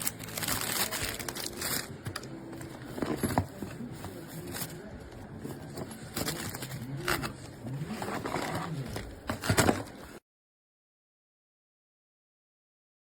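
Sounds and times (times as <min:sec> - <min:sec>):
handling knocks and rustles: 0:00.3 - 0:10.2.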